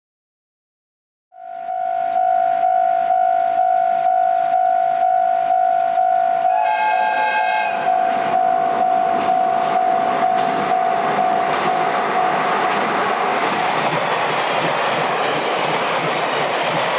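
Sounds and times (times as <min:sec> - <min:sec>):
level-crossing electronic bell: 0:01.4 - 0:14.3
train horn: 0:05.7 - 0:08.4.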